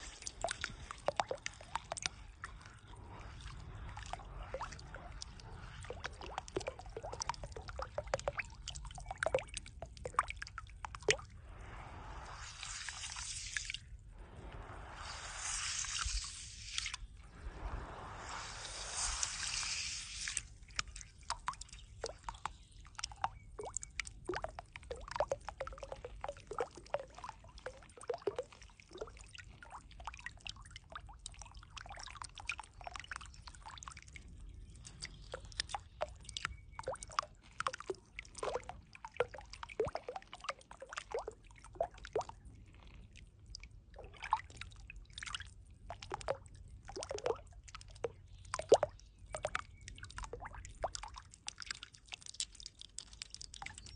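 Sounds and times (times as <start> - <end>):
low steady rumble: 0.0 - 9.2, 9.8 - 20.7
water dripping: 0.0 - 53.9.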